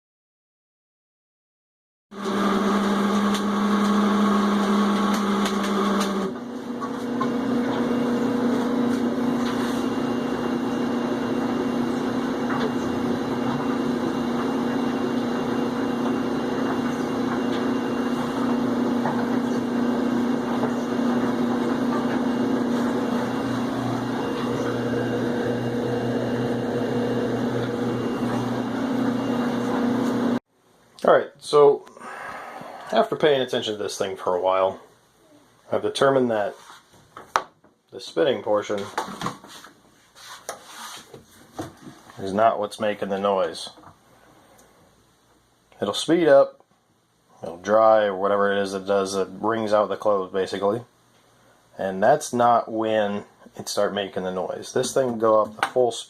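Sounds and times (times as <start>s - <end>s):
washing machine whining: 2.1s - 30.4s.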